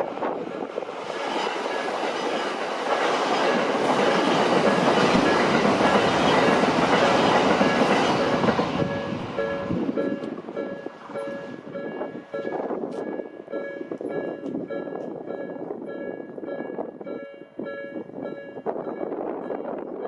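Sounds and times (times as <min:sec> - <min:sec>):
train wheels clattering over rail joints: 0:00.0 - 0:15.7
crossing warning bell ringing: 0:00.0 - 0:20.0
electric train passing: 0:00.0 - 0:20.0.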